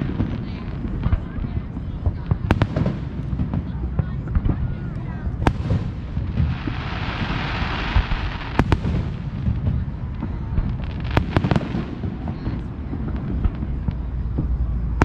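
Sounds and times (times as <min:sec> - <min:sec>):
fireworks booming: 0:00.0 - 0:15.0
fireworks sharp cracks: 0:00.0 - 0:15.0.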